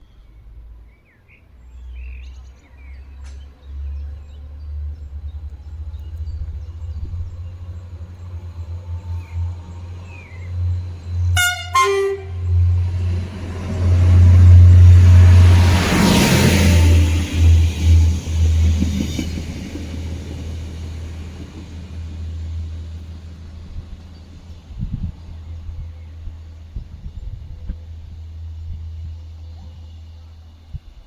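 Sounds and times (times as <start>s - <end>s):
diesel train pulling away: 1.7s - 31.0s
low rumble: 4.7s - 31.0s
train horn blasts: 11.2s - 12.9s, 13.7s - 17.6s.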